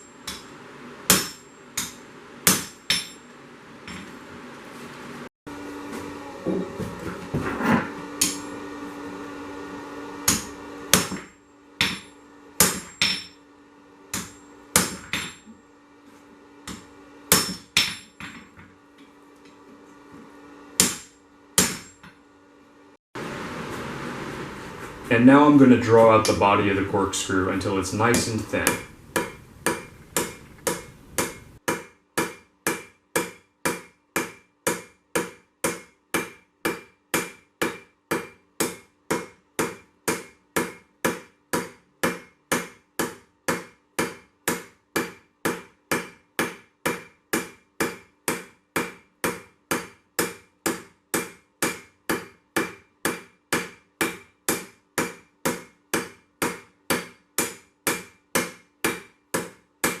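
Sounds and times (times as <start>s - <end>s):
hammer striking steel on anvil: 0.0s - 4.1s, 8.2s - 8.7s, 10.2s - 13.4s, 14.1s - 15.6s, 16.6s - 18.6s, 20.8s - 22.2s, 25.9s - 26.4s, 27.7s - 60.0s.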